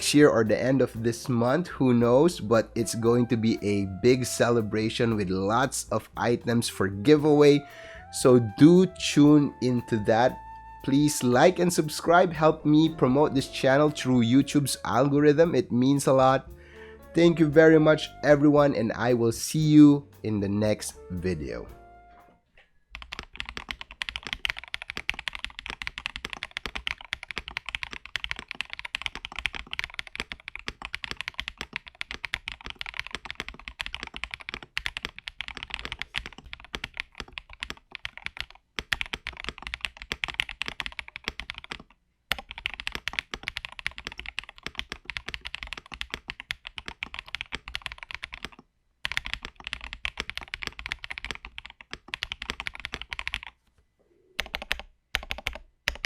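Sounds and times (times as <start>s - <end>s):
mechanical keyboard typing: 22.9s - 53.6s, 54.4s - 56.0s.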